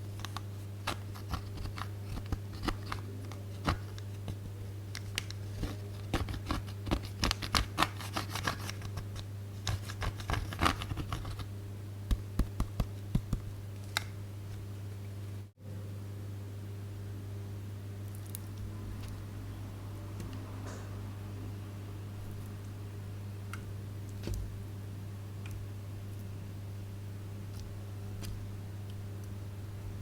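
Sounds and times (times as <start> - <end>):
steady low hum: 0.0 - 30.0
sharp clicks and taps: 12.1 - 14.2.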